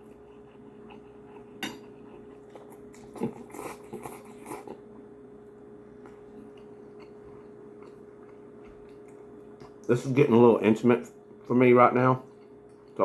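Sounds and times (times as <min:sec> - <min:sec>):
chewing and mouth noises: 0:00.0 - 0:05.0, 0:06.0 - 0:10.0
faint steady hum: 0:00.0 - 0:13.0.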